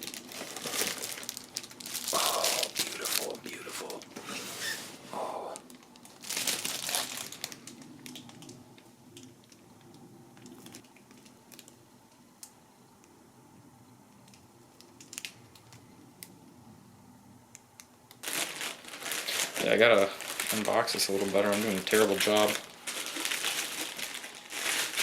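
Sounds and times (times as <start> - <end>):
packaging crinkling and rustling: 0.0 - 11.8, 14.2 - 15.8, 18.1 - 25.0.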